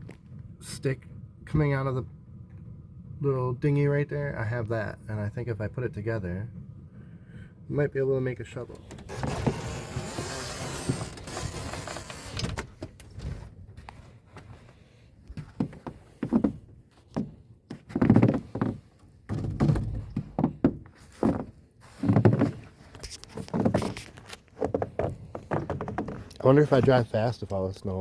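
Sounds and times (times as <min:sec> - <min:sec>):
dull thumps and knocks: 0:15.3 - 0:27.0.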